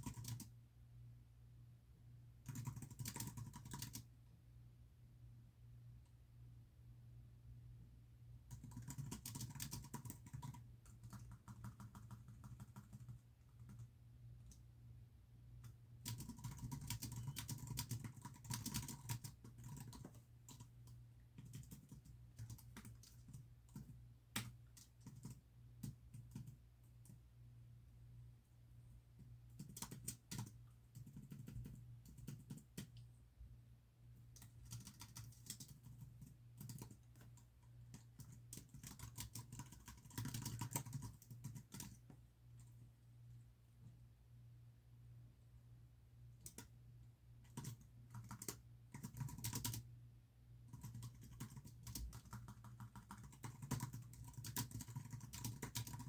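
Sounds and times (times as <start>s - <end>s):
keyboard typing: 0.0s - 0.5s, 2.4s - 4.1s, 8.5s - 14.6s, 15.6s - 27.2s, 29.5s - 33.1s, 34.3s - 42.8s, 46.4s - 46.7s, 47.4s - 49.9s, 50.7s - 56.0s.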